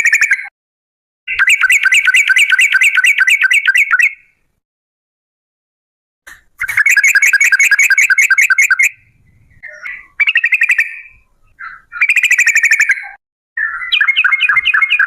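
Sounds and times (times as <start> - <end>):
bulbul singing rolling song: 1.3 - 4.6, 6.3 - 15.0.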